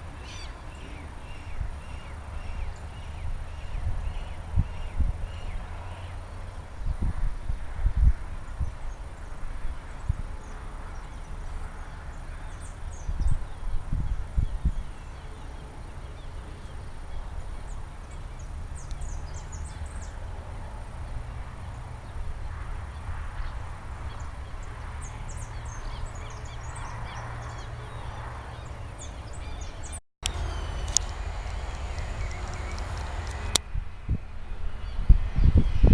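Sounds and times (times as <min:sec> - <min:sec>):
wind buffeting microphone: 0:00.0 - 0:35.9
high bird chirps: 0:29.5 - 0:33.6.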